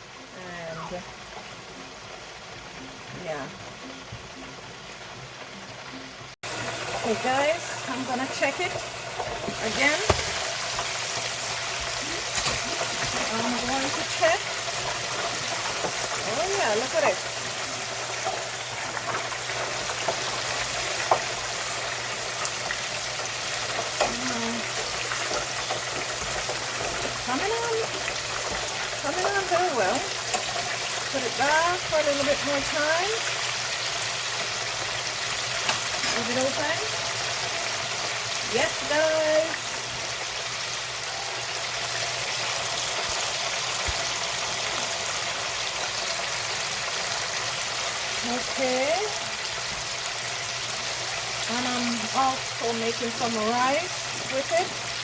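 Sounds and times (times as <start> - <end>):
chicken deep-frying in oil: 0.0 - 55.0.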